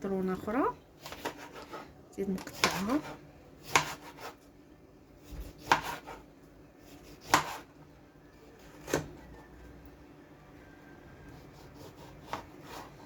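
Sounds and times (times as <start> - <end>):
knife cutting lemon on board: 2.4 - 4.4, 5.2 - 6.3, 6.9 - 7.7, 8.6 - 9.2, 11.6 - 13.0.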